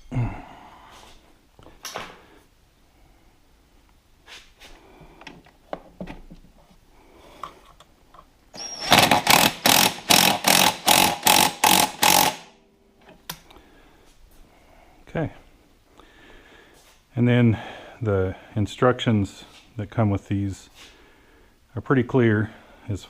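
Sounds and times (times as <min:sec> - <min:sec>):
power tool running in bursts: 0:08.6 - 0:12.5.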